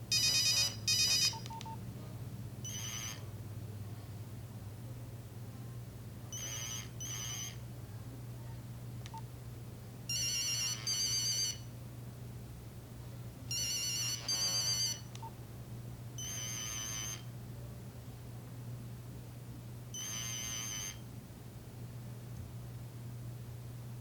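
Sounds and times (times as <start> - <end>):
monophonic beep ringtone: 0.1 - 1.4, 2.7 - 3.2, 10.1 - 11.6, 13.5 - 15.0, 16.2 - 17.2, 20.0 - 21.0.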